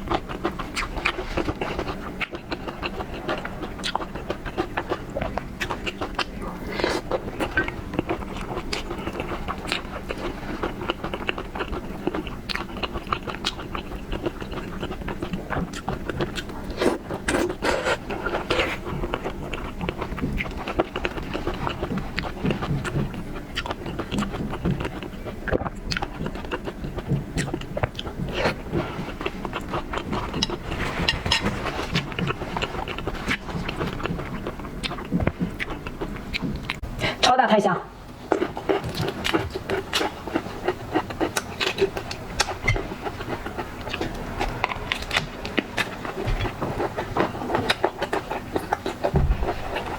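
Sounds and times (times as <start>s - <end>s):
person chewing seafood: 0.0s - 37.3s, 38.0s - 49.9s.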